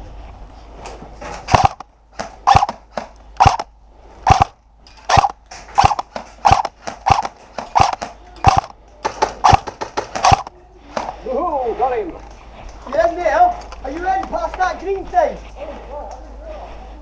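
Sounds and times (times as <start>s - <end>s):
airsoft rifle shots: 1.3s - 11.1s.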